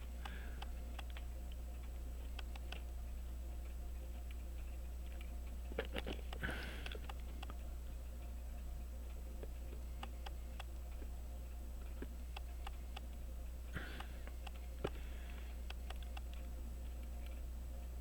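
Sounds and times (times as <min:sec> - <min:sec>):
steady low hum: 0:00.0 - 0:18.0
small tool clicks: 0:00.2 - 0:01.3, 0:02.2 - 0:02.9, 0:14.0 - 0:16.5.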